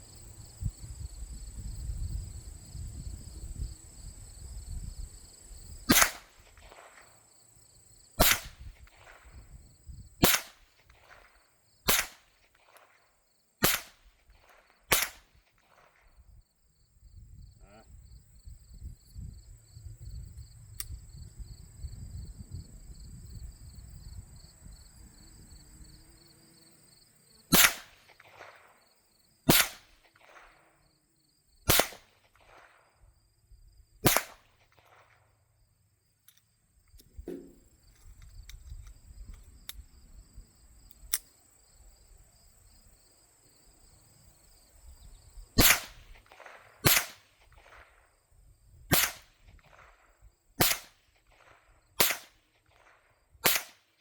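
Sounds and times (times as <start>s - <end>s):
pistol shots with echo: 5.9s - 7.1s, 8.2s - 9.4s, 10.2s - 13.0s, 13.6s - 16.0s, 27.5s - 28.8s, 29.5s - 30.7s, 31.7s - 32.8s, 34.0s - 35.2s, 45.6s - 48.0s, 48.9s - 50.0s, 50.6s - 53.9s.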